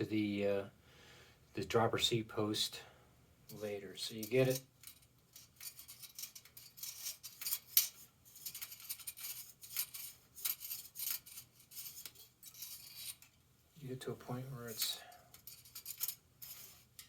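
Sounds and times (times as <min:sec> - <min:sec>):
scraping and clicking of small parts: 0:03.5 - 0:13.4, 0:14.5 - 0:17.0.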